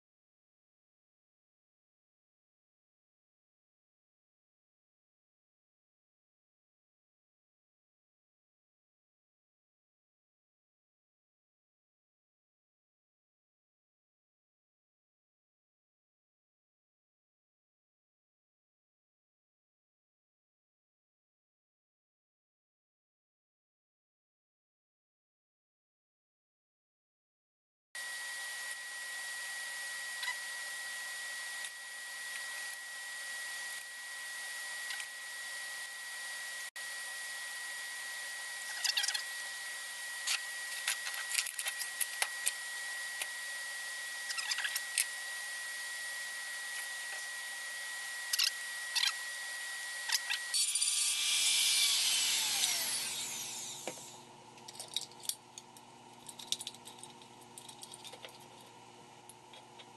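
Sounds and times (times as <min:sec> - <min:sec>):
power tool motor whining: 0:28.0 - 0:54.2.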